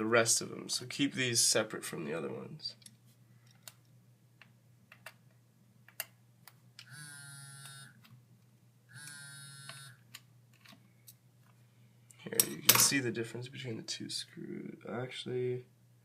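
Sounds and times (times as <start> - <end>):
small electric device buzzing: 6.8 - 8.0, 8.9 - 10.0.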